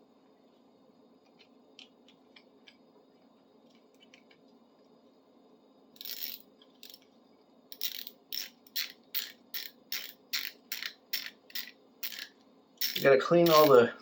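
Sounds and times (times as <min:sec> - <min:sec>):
socket ratchet clicking: 0:07.7 - 0:13.7.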